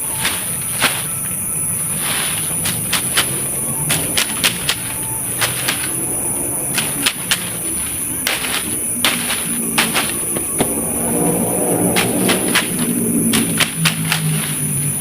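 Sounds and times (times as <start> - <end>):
steady high-pitched hiss: 0.0 - 15.0
sharp clicks and cracks: 11.9 - 14.7.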